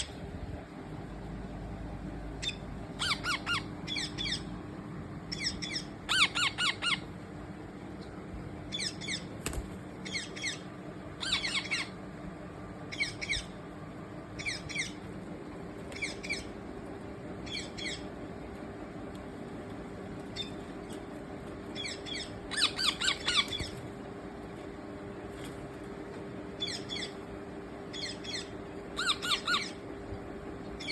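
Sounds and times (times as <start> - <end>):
baby parrot chirping: 2.4 - 4.4, 5.3 - 7.0, 11.2 - 11.9, 21.8 - 23.8, 26.6 - 27.1, 27.9 - 29.8.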